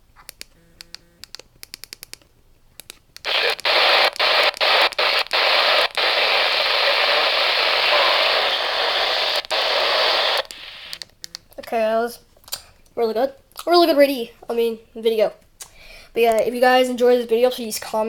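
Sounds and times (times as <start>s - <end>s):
radio static hiss: 3.2s - 11.0s.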